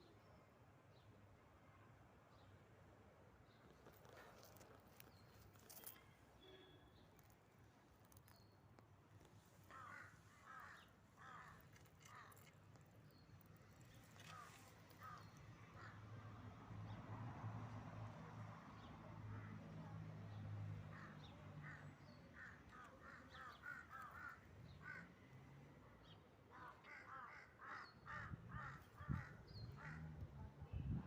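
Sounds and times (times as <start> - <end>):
faint birds calling: 9.3 - 16.0.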